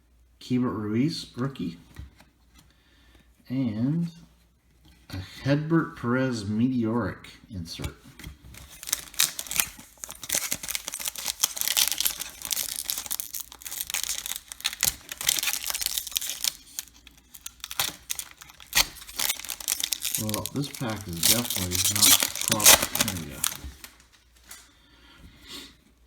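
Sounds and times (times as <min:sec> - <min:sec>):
wrapper crinkling and tearing: 0:08.5 - 0:24.7.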